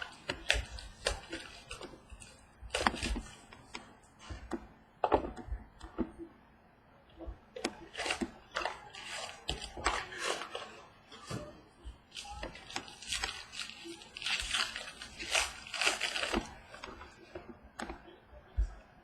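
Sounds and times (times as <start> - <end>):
card packaging crinkling: 12.1 - 17.3.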